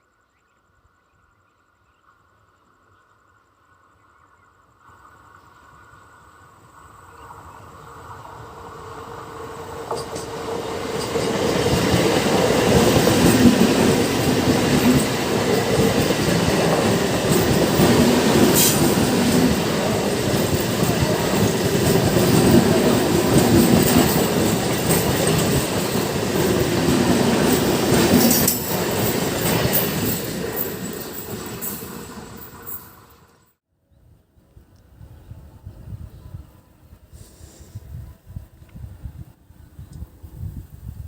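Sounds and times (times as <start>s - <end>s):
train wheels clattering on rails: 9.7s - 33.1s.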